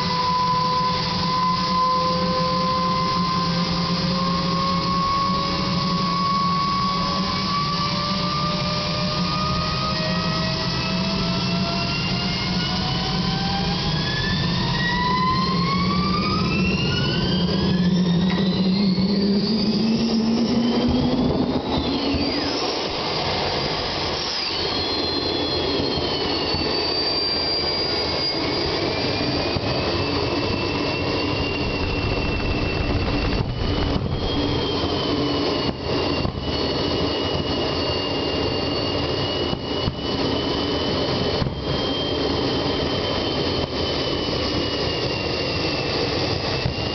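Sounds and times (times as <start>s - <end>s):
jet engine whine: 0.0s - 46.9s
jet exhaust rush: 0.0s - 46.9s.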